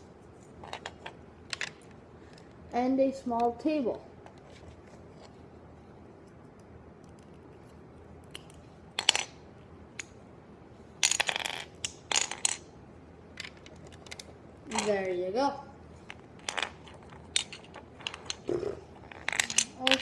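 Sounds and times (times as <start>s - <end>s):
plastic bricks clicking and clattering: 16.4s - 20.0s.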